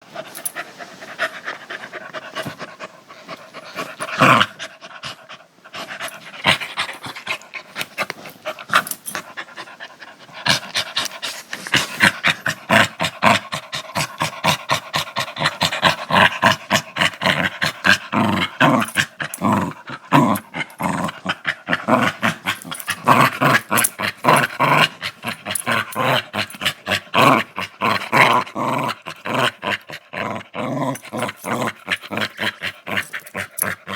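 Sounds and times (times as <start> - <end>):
small dog growling: 3.6 - 5.2, 10.4 - 33.9.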